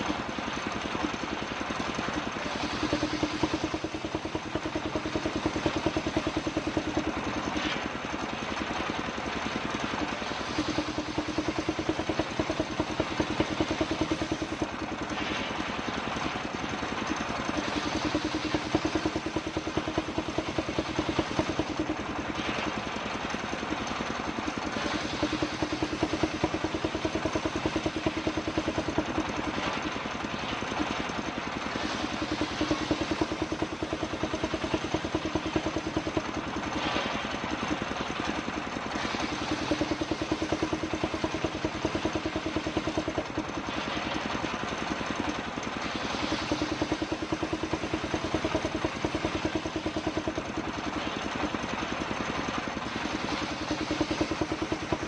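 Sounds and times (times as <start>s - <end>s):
circular saw engine running: 0.0s - 55.0s.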